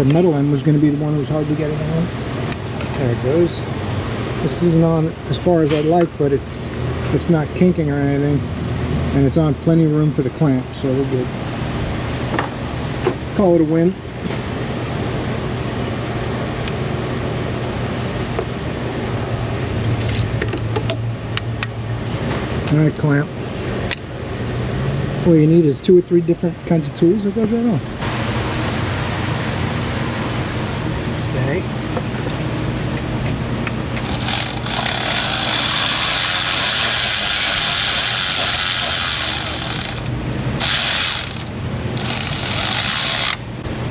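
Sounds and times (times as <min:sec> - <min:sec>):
fan humming and whooshing: 0:00.0 - 0:43.9
small power tool motor running: 0:34.0 - 0:43.5.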